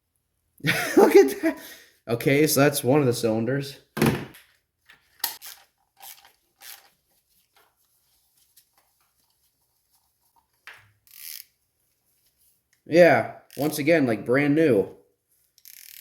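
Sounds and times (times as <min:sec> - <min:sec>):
hand tools clicking and scraping: 0:05.2 - 0:07.0.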